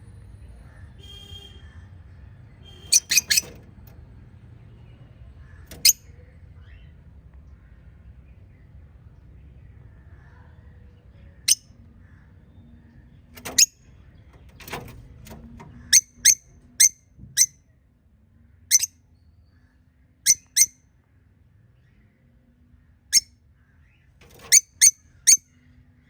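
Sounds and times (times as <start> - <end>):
faint low hum: 1.6 - 20.2
parrots chirping: 2.9 - 3.5.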